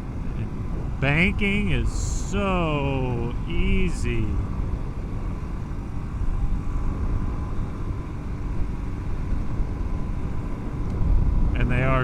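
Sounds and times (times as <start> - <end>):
wind rumble on microphone: 4.4 - 12.0.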